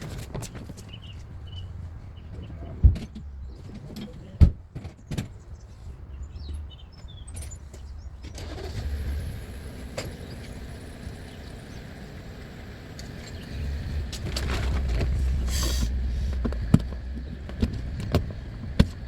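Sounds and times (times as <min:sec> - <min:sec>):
vehicle engine running: 0:07.9 - 0:19.0
steady low rumble: 0:09.0 - 0:19.0.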